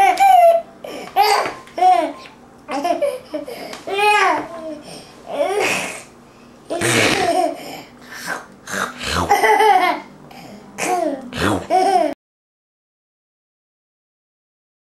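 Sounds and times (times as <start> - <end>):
young child laughing: 0.0 - 4.5, 6.7 - 7.7, 9.2 - 10.1.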